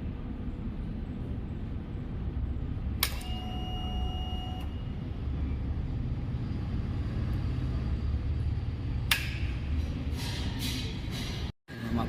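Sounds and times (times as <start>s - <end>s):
sharp click: 3.0s - 3.4s.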